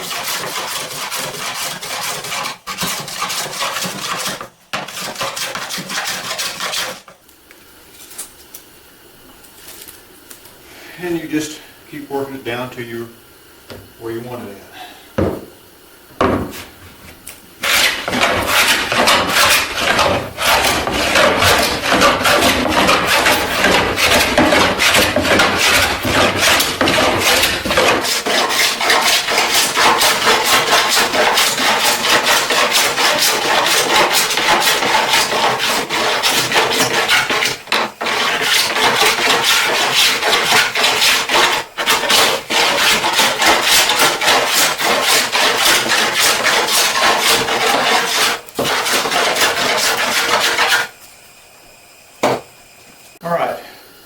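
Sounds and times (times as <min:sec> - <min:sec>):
hand plane rasping on wood: 0:00.0 - 0:07.1, 0:17.6 - 0:50.9
knock: 0:15.2 - 0:15.5, 0:16.2 - 0:16.6, 0:52.2 - 0:52.4.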